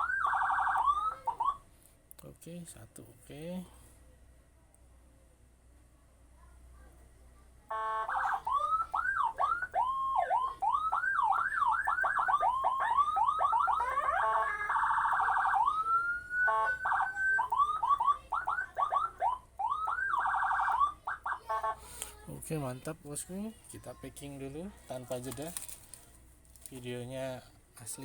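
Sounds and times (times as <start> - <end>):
electronic siren wail and yelp: 0.0 - 1.6, 7.7 - 21.8.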